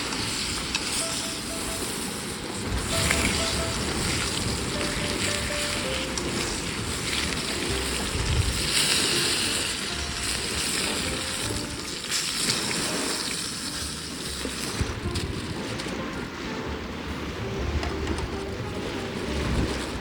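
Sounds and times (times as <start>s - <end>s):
waves washing on shore: 0.0s - 20.0s
wind on microphone: 2.2s - 12.8s, 17.0s - 20.0s.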